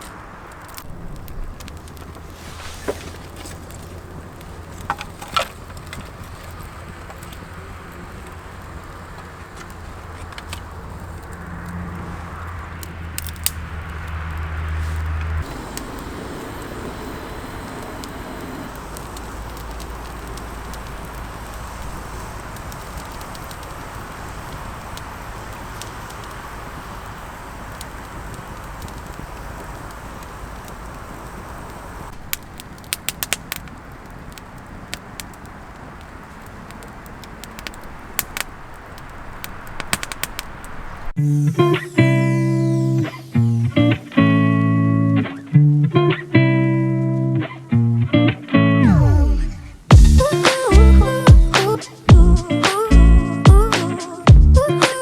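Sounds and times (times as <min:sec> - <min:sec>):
sharp clicks: 0:36.8 - 0:41.0.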